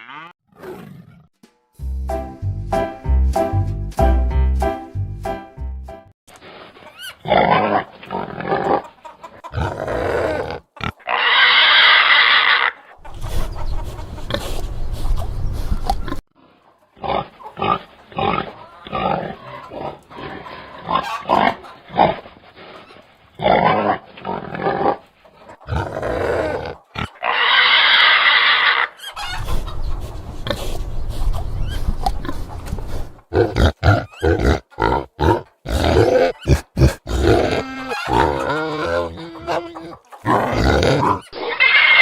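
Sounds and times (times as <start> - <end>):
pigs making short calls: 6.8 - 16.2, 25.6 - 42.0
pig squealing loudly: 9.5 - 12.9, 17.0 - 22.2, 25.7 - 30.8, 33.3 - 42.0.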